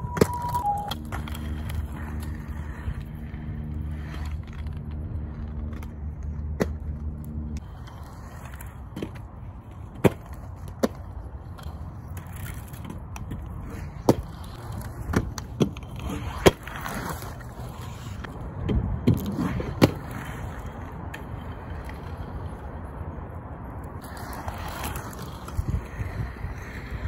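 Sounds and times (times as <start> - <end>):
bike tyres rolling: 0.0 - 27.0
bike and feet knocking ground: 8.6 - 17.3.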